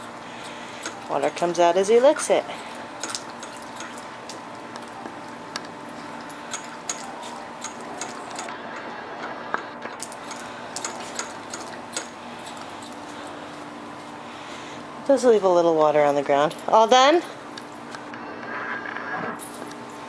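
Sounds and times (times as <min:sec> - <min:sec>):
dog licking water valve: 0:00.8 - 0:04.9.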